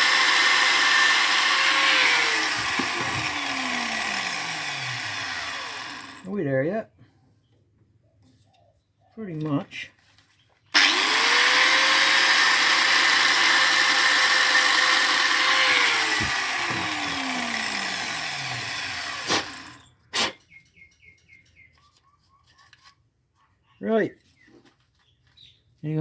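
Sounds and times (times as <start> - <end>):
angle grinder grinding steel: 0.0 - 6.3, 10.8 - 19.9.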